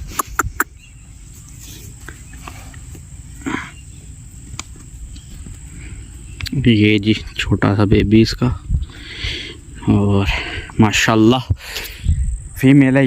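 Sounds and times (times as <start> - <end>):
cow snorting: 0.0 - 0.7
insect trilling: 0.0 - 1.1.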